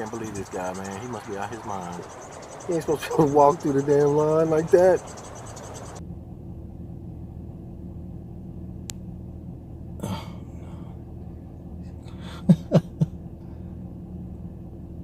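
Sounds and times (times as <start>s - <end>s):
car engine idling: 0.0s - 15.0s
person coughing: 10.0s - 10.5s.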